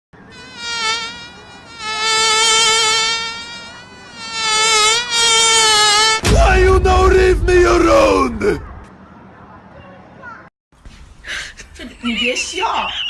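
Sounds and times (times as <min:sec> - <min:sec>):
animal buzzy call: 0:00.3 - 0:06.2.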